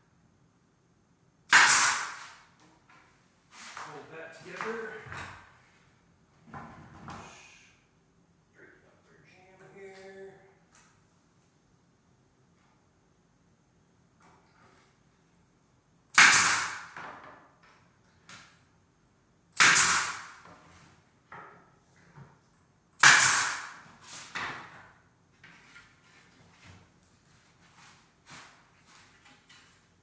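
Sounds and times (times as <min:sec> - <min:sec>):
nail gun firing: 0:01.5 - 0:02.4, 0:16.1 - 0:17.0, 0:19.6 - 0:20.4, 0:23.0 - 0:23.9.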